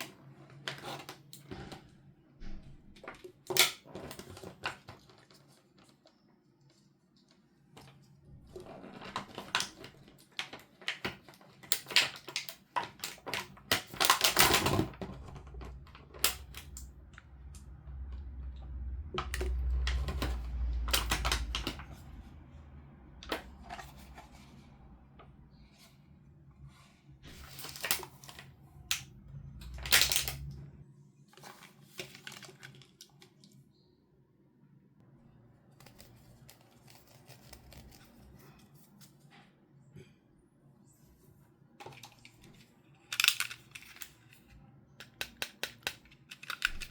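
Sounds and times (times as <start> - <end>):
plastic toy packaging rustling: 3.0 - 22.4, 27.2 - 30.6, 31.2 - 33.6, 35.7 - 39.2, 41.8 - 46.9
low handling rumble: 15.0 - 25.6.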